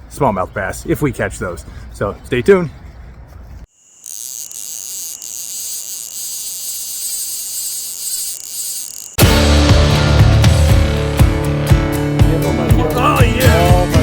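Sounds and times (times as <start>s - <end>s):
insects trilling: 3.7s - 9.2s
music: 9.2s - 14.0s.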